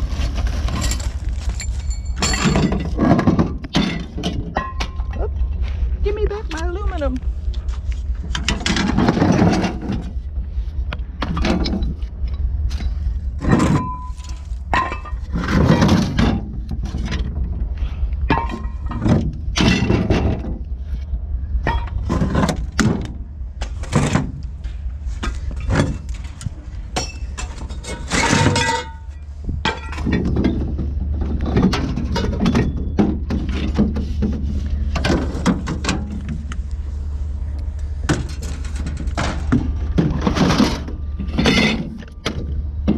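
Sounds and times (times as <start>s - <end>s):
metal scrap clanking: 0.0s - 5.4s, 8.3s - 10.2s, 12.7s - 17.5s, 18.3s - 20.6s, 21.6s - 36.5s, 38.0s - 42.9s
steady low hum: 0.0s - 42.9s.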